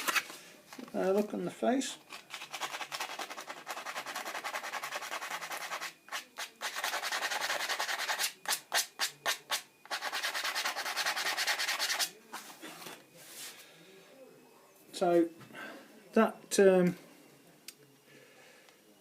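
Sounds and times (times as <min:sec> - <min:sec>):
sandpaper rubbing on wood: 0:02.4 - 0:12.1.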